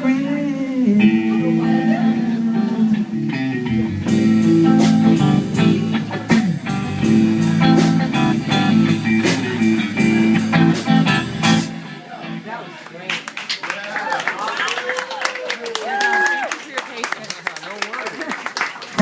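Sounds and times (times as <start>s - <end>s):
bass: 0.0s - 12.7s
guitar lines: 0.0s - 13.2s
drum kit beat: 3.4s - 11.9s.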